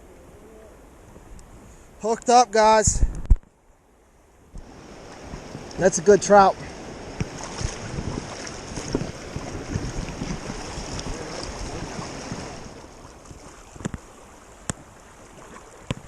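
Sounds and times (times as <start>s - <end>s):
creek water rushing: 3.8s - 16.0s.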